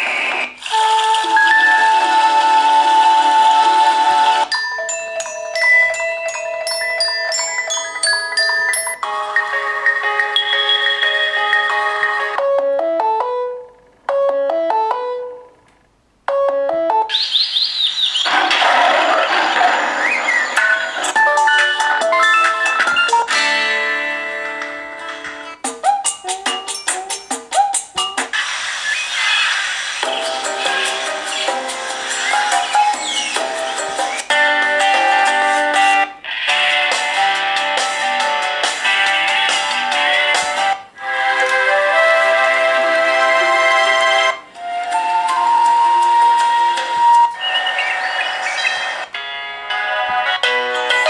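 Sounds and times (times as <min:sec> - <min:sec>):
chirping ringtone: 0:00.7 - 0:15.6, 0:16.3 - 0:18.3, 0:20.0 - 0:23.3, 0:25.9 - 0:28.4, 0:30.0 - 0:35.8, 0:46.4 - 0:51.0
quick run of ringtone notes: 0:04.5 - 0:12.6.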